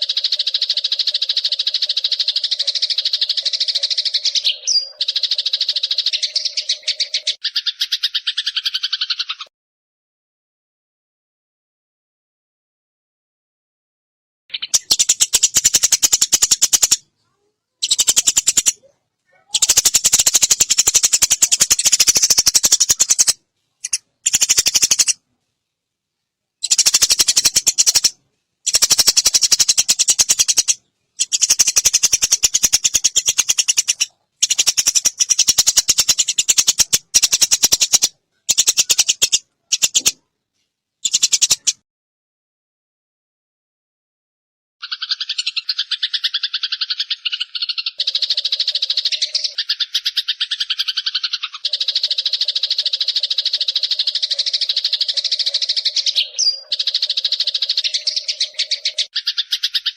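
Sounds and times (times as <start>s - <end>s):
sparrow rattling chatters: 0.0s - 9.5s, 14.5s - 17.0s, 17.8s - 25.2s, 26.6s - 40.2s, 41.0s - 41.8s, 44.8s - 59.9s.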